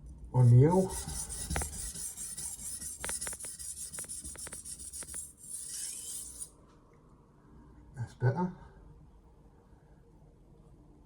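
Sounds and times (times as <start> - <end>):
knife scraping on sharpening stone: 0.8 - 6.5.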